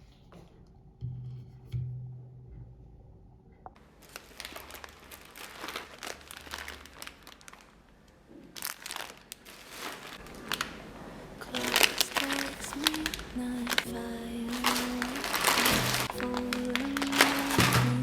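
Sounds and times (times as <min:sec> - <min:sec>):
wrapper crinkling and rustling: 0:04.0 - 0:18.0.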